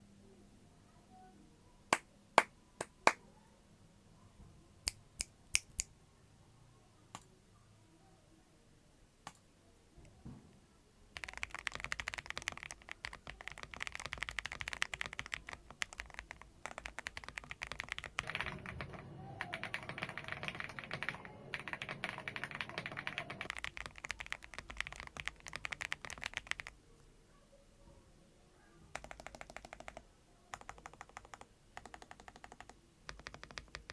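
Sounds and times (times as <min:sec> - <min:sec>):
mechanical keyboard typing: 0:11.2 - 0:26.8, 0:28.9 - 0:33.9.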